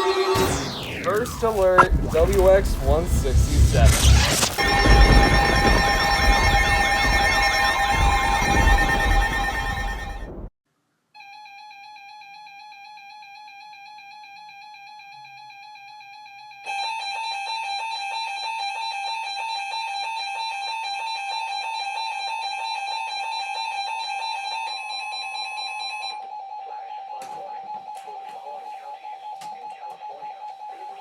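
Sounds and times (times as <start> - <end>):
rapidly pulsing alarm: 0.0 - 10.5, 11.6 - 31.0
warbling electronic alert tone: 0.1 - 10.4.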